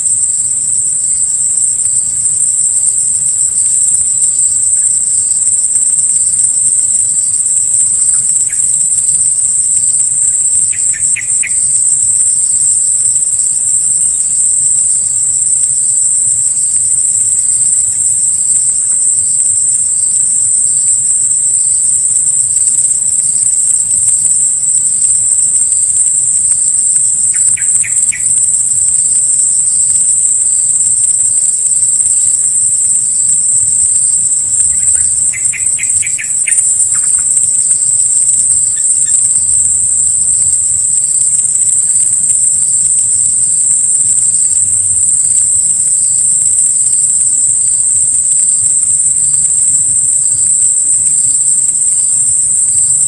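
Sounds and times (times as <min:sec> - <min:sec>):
insects droning: 0:00.0 - 0:53.0
small birds chirping: 0:34.6 - 0:37.4.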